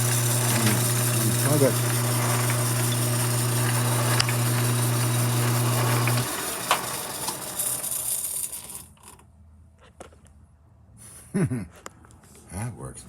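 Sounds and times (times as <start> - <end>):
lathe motor hum and gears: 0.0 - 8.9
mechanism spinning down: 0.0 - 9.0
small clicks: 1.8 - 9.2.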